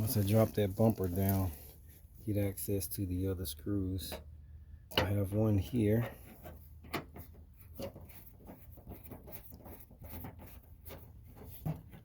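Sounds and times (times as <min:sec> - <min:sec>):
tool scraping plastic: 0:06.0 - 0:12.0.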